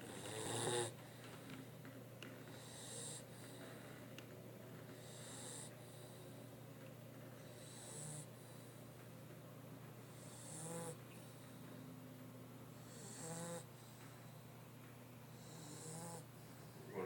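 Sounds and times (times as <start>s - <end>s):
dog snoring softly: 0.0s - 4.2s, 4.8s - 6.6s, 7.4s - 9.0s, 10.0s - 12.0s, 12.7s - 14.5s, 15.3s - 17.0s.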